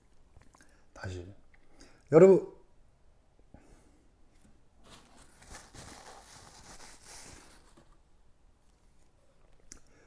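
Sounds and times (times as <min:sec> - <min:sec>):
rustling and crackling handling noise: 0:04.3 - 0:09.6.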